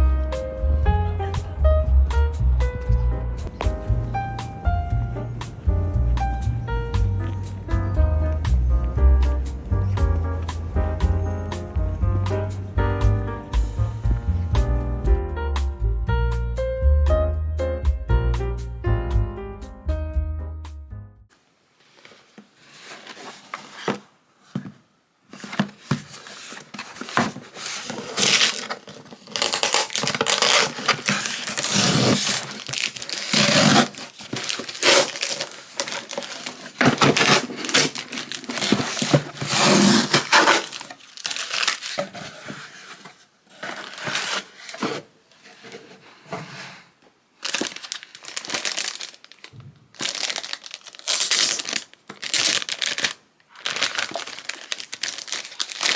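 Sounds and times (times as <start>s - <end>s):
crinkling and rustling: 21.3s - 55.9s.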